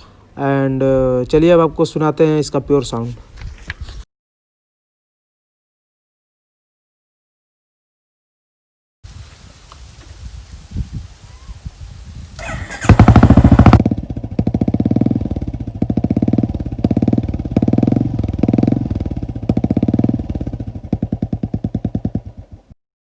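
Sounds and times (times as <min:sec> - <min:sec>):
motorcycle engine cranking: 0:12.4 - 0:13.8
motorcycle exhaust thumps idling: 0:12.4 - 0:22.7.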